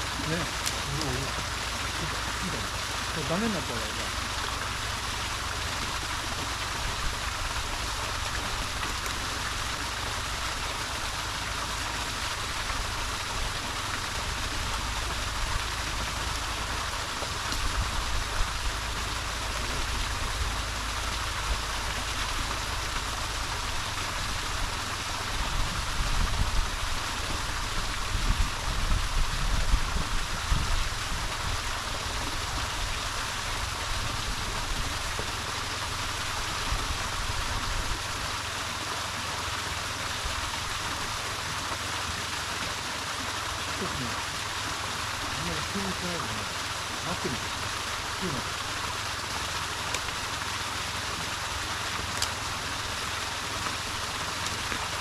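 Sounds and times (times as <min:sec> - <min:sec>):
stream rushing over rocks: 0:00.0 - 0:55.0.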